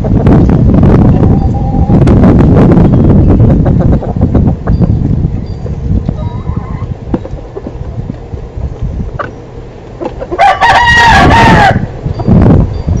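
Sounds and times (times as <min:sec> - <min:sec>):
wind rumble on microphone: 0:00.0 - 0:13.0
rooster crowing: 0:10.4 - 0:11.9.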